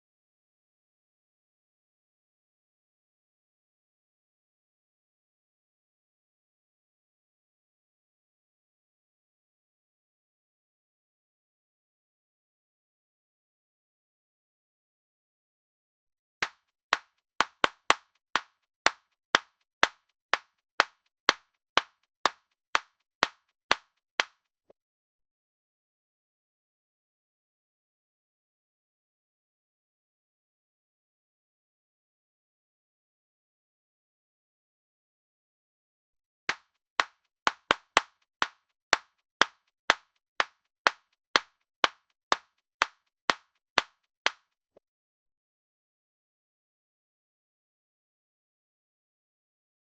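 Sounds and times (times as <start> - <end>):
person clapping hands: 16.4 - 24.5, 36.5 - 44.5.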